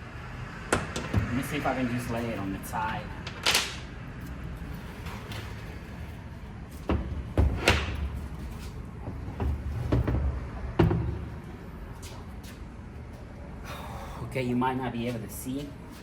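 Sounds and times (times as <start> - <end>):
heavy metal clunks and knocks: 6.8 - 11.6.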